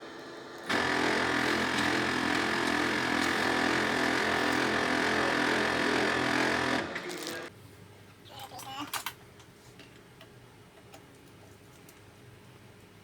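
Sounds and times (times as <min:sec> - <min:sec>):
laser printer grinding: 0:00.7 - 0:07.5.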